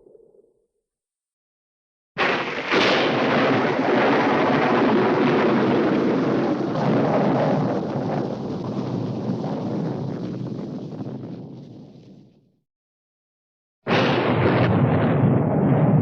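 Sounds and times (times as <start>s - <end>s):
sharp thunder crack: 2.2s - 11.9s, 13.9s - 16.0s
rolling thunder rumble: 2.2s - 12.3s, 13.9s - 16.0s
thunderclap: 2.2s - 12.3s, 13.9s - 16.0s.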